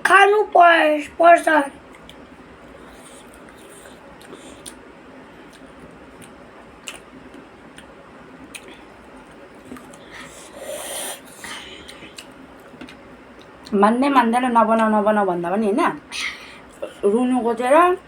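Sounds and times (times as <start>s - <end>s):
chewing: 1.9s - 4.8s, 5.4s - 13.8s.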